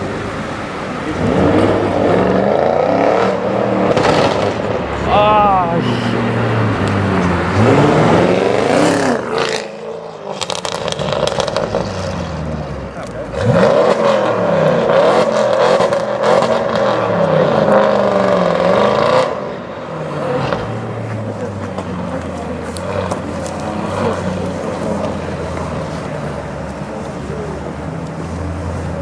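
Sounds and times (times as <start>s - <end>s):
car engine revving: 0.0s - 29.0s
exhaust crackles and pops: 9.6s - 17.0s.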